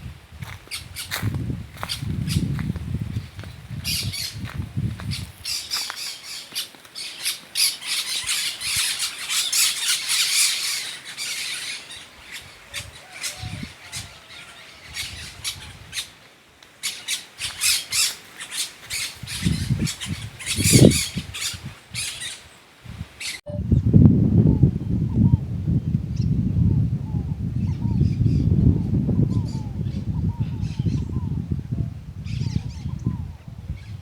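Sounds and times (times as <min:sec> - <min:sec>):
wind rumble on microphone: 0:00.0 - 0:05.8, 0:12.1 - 0:16.1, 0:18.9 - 0:34.0
parrots squawking: 0:05.5 - 0:16.1, 0:16.8 - 0:22.4.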